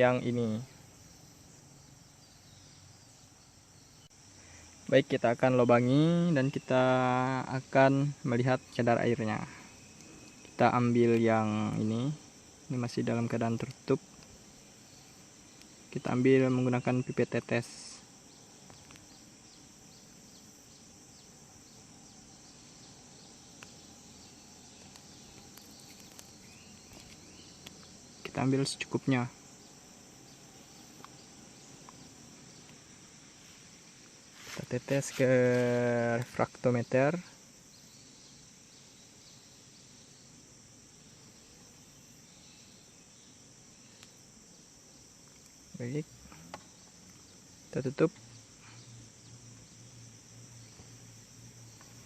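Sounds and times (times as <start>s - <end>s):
insects chirring: 0.0s - 52.0s
low even hiss: 0.0s - 52.0s.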